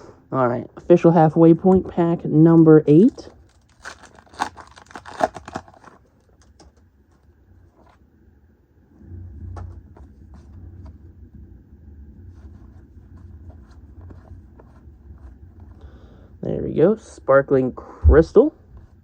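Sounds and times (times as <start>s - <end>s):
foil wrapper crinkling and tearing: 3.0s - 6.8s
low rumble: 7.1s - 17.0s.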